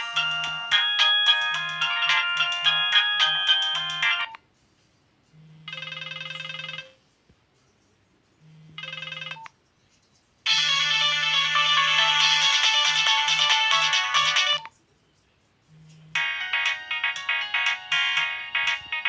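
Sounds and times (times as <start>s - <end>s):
phone ringtone melody: 0.0s - 4.4s, 5.6s - 7.0s, 8.7s - 9.4s, 10.5s - 14.7s, 16.1s - 19.0s.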